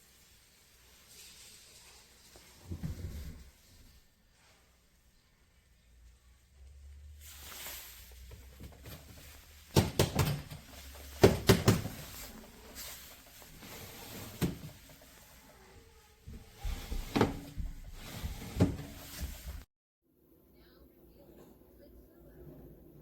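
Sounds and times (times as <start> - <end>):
keyboard tray clunking: 9.7 - 15.1.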